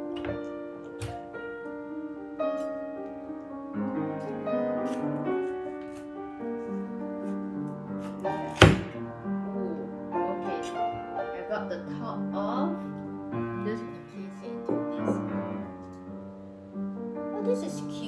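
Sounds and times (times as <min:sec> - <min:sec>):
soft piano music: 0:00.0 - 0:18.0
knife cutting through pineapple: 0:04.3 - 0:09.0.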